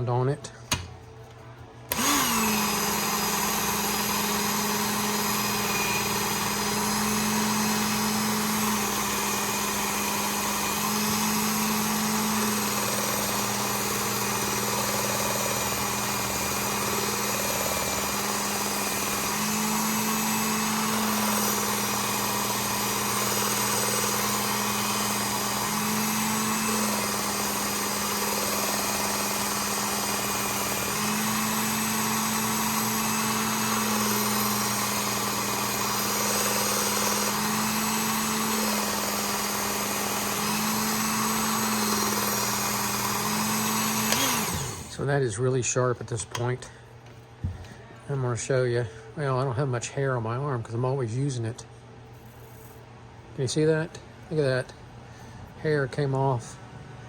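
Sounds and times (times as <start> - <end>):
belt sharpener motor hum: 1.9 - 45.0.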